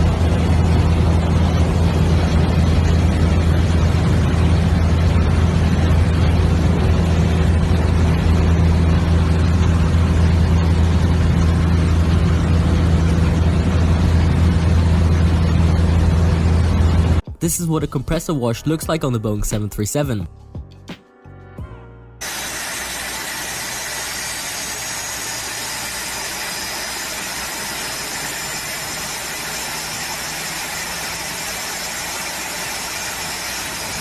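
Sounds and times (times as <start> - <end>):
aircraft engine droning: 0.0 - 17.6, 22.2 - 34.0.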